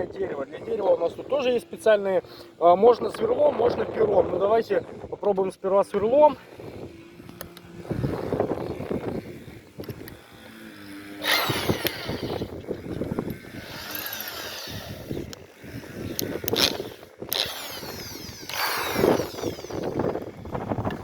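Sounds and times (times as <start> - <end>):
electric drill drilling into wood: 6.4 - 21.0.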